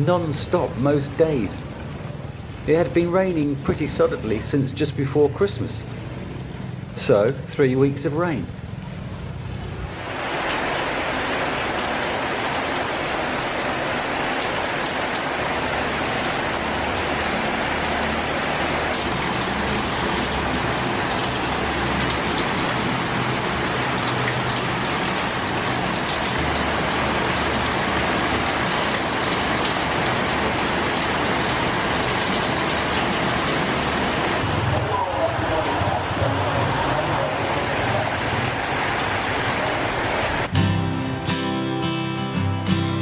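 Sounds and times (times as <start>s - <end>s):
heavy rain pouring: 0.0s - 43.0s.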